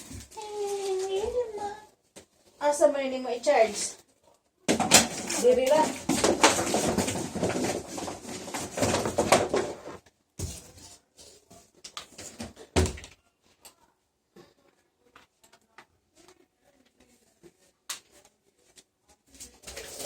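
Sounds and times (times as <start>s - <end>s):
clattering and knocking of objects: 0.0s - 1.4s, 4.7s - 13.2s.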